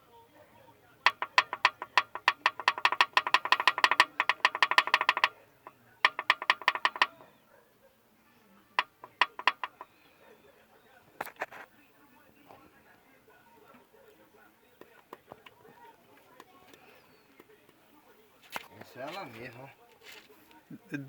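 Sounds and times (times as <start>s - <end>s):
connecting rod clacking metal: 1.1s - 7.2s, 8.8s - 9.9s.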